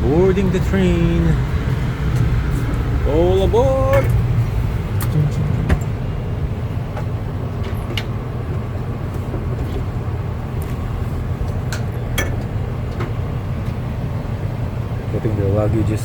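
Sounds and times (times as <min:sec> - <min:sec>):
standing train rumble: 0:00.0 - 0:16.0.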